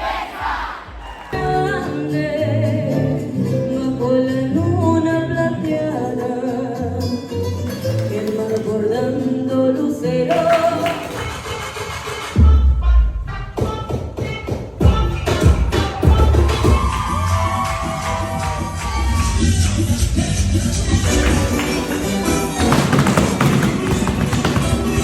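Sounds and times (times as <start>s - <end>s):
two people singing: 0.0s - 13.0s
loud bass beat: 14.8s - 17.1s.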